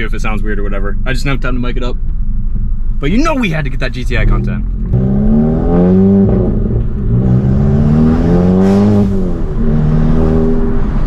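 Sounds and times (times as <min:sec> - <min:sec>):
car engine accelerating hard: 0:04.0 - 0:11.0.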